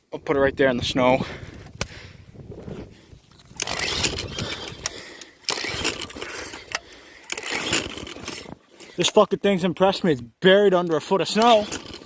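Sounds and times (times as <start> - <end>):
lawn mower engine running: 3.4 - 9.0, 11.3 - 12.0.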